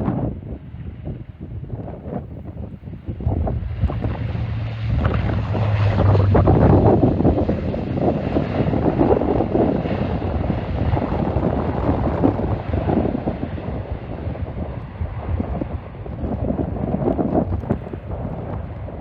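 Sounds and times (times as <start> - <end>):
jet engine rumble: 0.0 - 19.0
wind buffeting microphone: 0.0 - 19.0.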